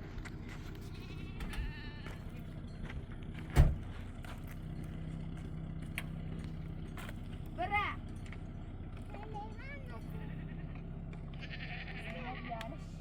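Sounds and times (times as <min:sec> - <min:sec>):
sheep or goat bleating: 0:01.0 - 0:02.4, 0:10.1 - 0:13.0.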